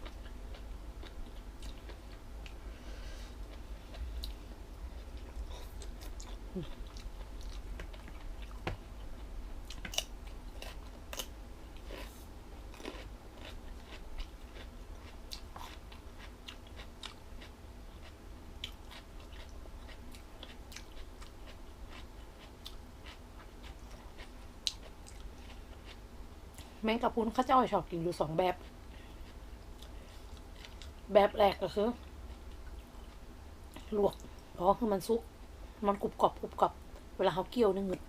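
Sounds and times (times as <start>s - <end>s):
crunchy chewing: 0.0s - 2.6s, 3.3s - 26.7s, 28.5s - 31.0s
steady low hum: 0.0s - 38.0s.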